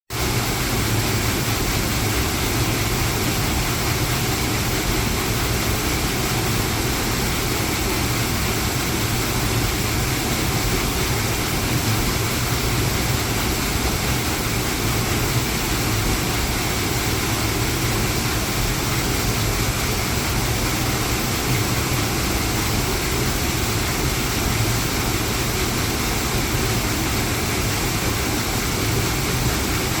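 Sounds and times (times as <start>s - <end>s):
water splashing off water wheel: 0.1s - 30.0s.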